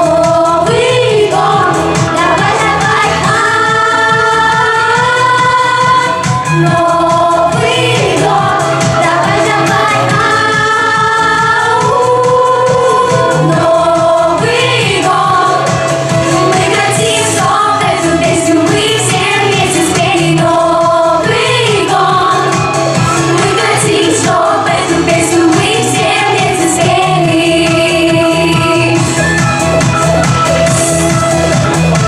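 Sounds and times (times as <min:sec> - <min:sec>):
backing track with steady beat: 0:00.0 - 0:32.0
group singing pop song: 0:00.0 - 0:32.0.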